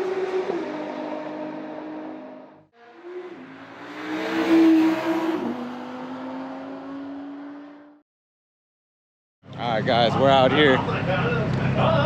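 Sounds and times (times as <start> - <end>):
sports car engine accelerating: 0.0 - 8.0.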